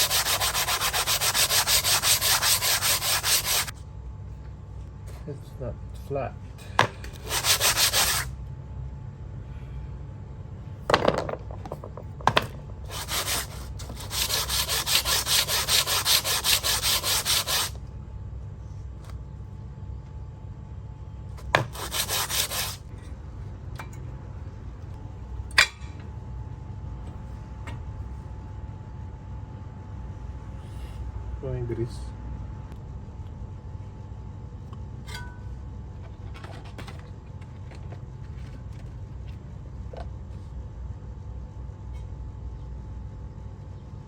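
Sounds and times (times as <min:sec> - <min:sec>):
sanding brake parts by hand: 0:00.0 - 0:03.7, 0:07.2 - 0:08.3, 0:12.9 - 0:17.8, 0:21.6 - 0:22.9
low steady hum: 0:00.0 - 0:44.0.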